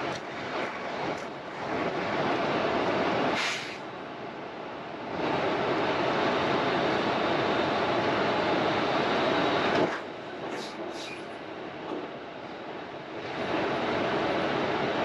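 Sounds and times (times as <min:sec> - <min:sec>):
vehicle rumbling on road: 0:00.0 - 0:04.1
short high hisses: 0:03.4 - 0:03.8.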